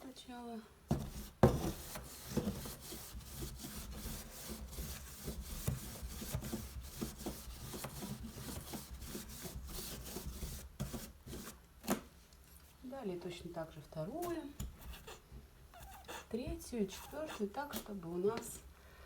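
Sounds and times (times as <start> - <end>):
paper napkin scrubbing on cardboard: 0.9 - 11.6, 14.3 - 15.2, 15.8 - 17.9.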